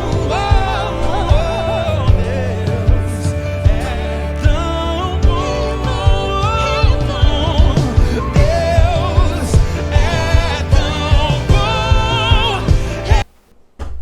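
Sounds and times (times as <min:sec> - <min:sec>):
band playing a steady beat: 0:00.0 - 0:13.2
person singing with vibrato: 0:00.0 - 0:13.3.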